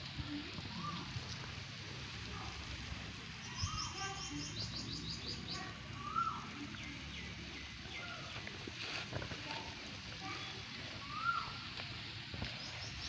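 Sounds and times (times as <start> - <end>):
background hiss: 0.0 - 13.0
bird chirping high: 3.4 - 8.3, 11.0 - 11.6
lower bird calls: 3.4 - 8.5, 10.2 - 11.7.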